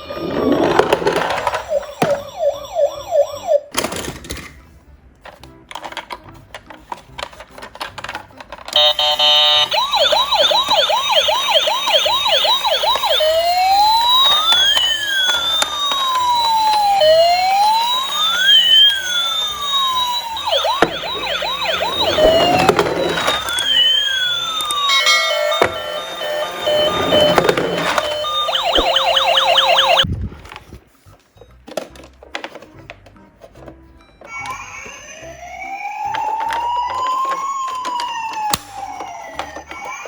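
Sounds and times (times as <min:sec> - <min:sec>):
toy electronic sirens: 0:00.0 - 0:03.7, 0:08.7 - 0:30.1, 0:34.2 - 0:40.0.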